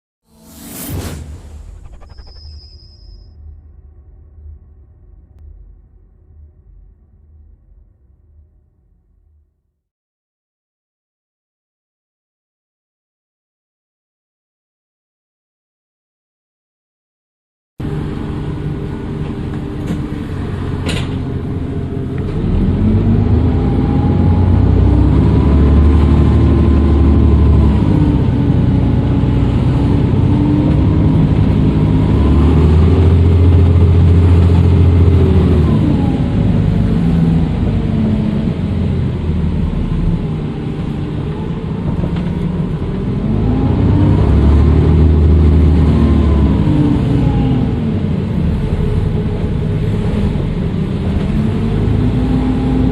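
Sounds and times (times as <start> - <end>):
turbocharger whistling: 0.3 - 3.7
diesel bus engine pulling away: 17.8 - 52.9.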